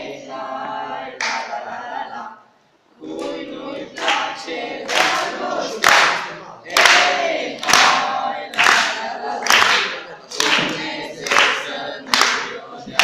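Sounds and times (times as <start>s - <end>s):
group of people singing: 0.0s - 13.0s
hands clapping on a beat: 1.2s - 1.6s, 4.0s - 4.3s, 4.9s - 13.0s.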